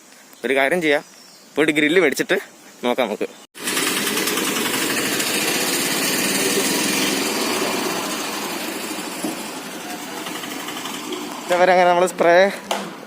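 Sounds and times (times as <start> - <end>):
small engine running: 3.6 - 11.7.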